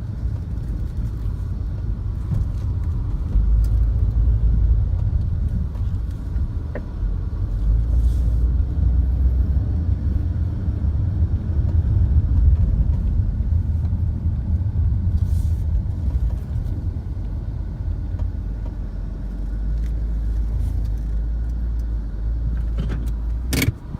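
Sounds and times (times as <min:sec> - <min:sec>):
car engine low rumble: 0:00.0 - 0:23.9.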